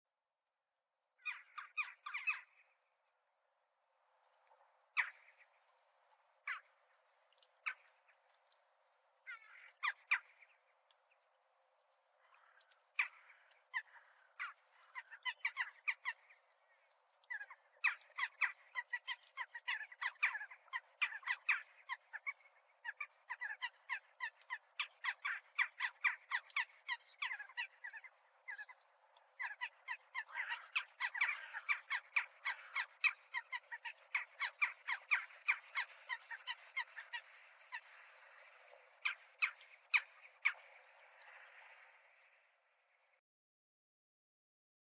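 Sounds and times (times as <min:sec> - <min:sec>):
crows chattering: 0:29.4 - 0:37.8.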